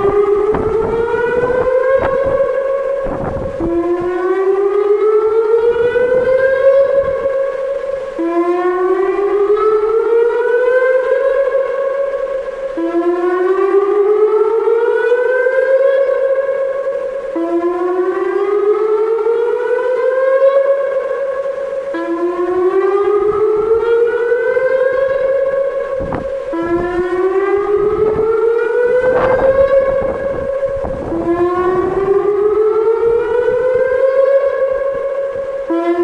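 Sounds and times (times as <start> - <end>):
low rumbling buffets: 0.0 - 12.4, 22.4 - 36.0
electronic warning siren whooping: 0.0 - 36.0.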